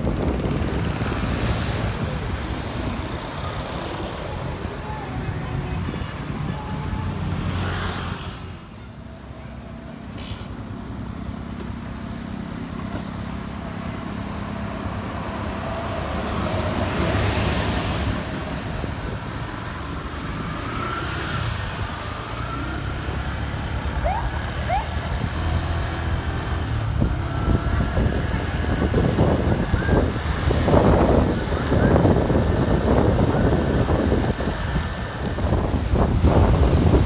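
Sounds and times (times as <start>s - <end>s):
traffic engines and passing vehicles: 0.0s - 37.0s.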